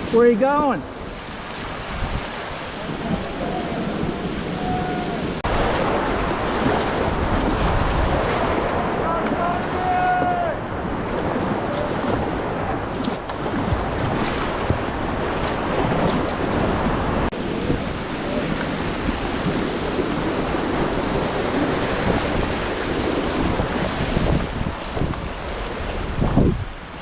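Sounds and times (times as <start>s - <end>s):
river rapid rushing: 0.0s - 27.0s
wind noise on microphone: 0.0s - 27.0s.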